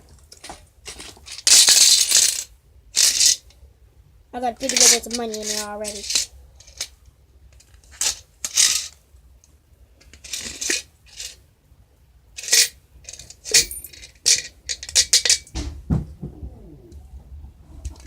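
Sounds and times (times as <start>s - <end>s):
coins clinking in a piggy bank: 12.4s - 15.2s.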